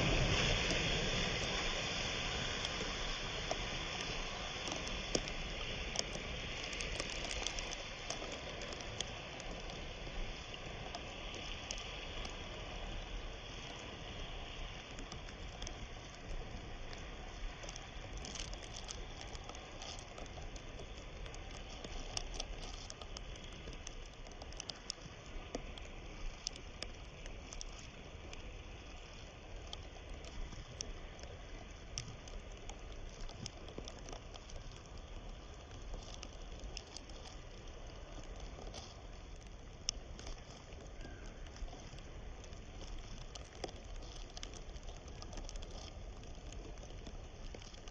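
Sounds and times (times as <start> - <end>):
river water flowing: 0.0 - 47.9.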